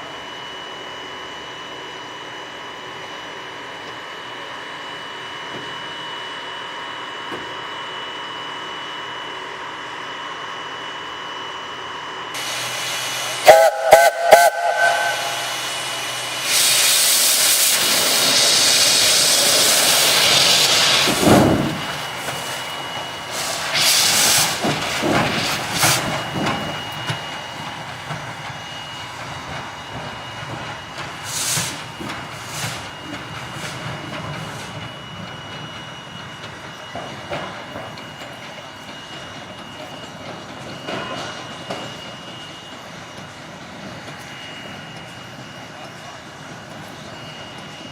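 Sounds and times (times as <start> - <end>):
steam whistle toots: 12.4 - 21.0
steam venting hiss: 12.4 - 26.8, 30.6 - 35.7
steam bursts: 12.4 - 38.1.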